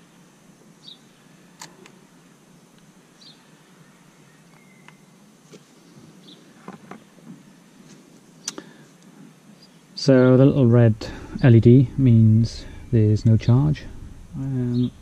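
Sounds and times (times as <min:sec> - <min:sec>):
faint high chirps: 0:03.1 - 0:05.2.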